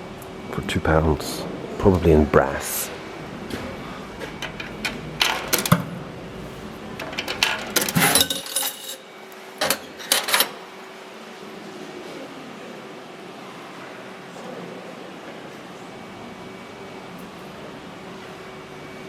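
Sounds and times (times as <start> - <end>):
coins clinking and dropping: 7.0 - 9.0.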